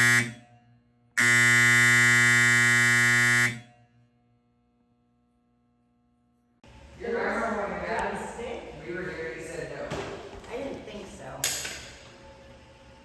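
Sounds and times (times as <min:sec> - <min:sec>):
fire alarm horn buzzing: 0:00.0 - 0:04.1.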